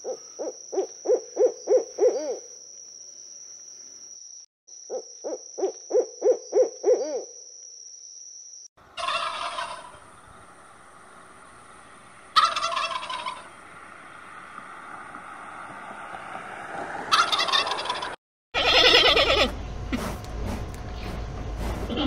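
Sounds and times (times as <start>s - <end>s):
bird hooting call: 0.0s - 2.5s, 4.9s - 7.4s, 12.4s - 13.6s.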